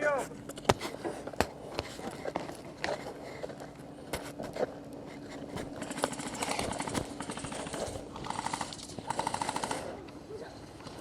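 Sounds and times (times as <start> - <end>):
airsoft guns firing bursts: 5.7 - 10.1.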